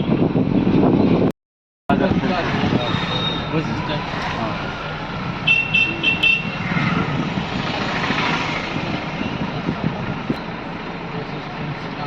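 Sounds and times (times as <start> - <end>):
vehicle passing: 1.9 - 10.4.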